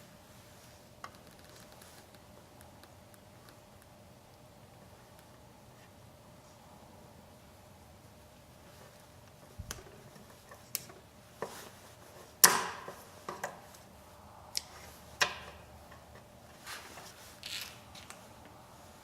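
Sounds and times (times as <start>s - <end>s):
sharp snaps and clicks: 10.7s - 11.0s, 14.5s - 15.4s.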